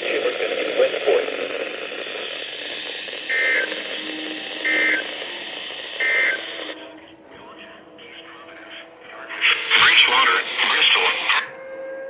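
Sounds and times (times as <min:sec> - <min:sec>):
radio static hiss: 0:00.0 - 0:11.6
digital data tone bursts: 0:01.2 - 0:06.9, 0:09.2 - 0:11.5.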